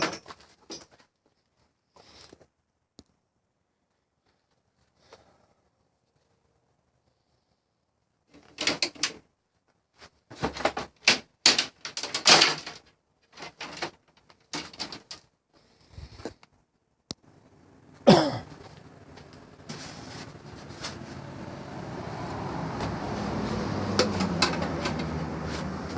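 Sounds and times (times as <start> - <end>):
metal parts clattering: 0.0 - 1.0, 10.4 - 15.3.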